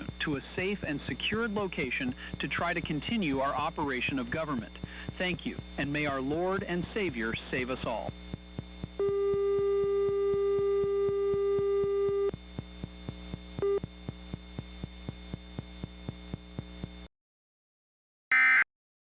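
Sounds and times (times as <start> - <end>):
steady electrical hum: 0.0 - 17.1
regular clicks: 8.0 - 9.0.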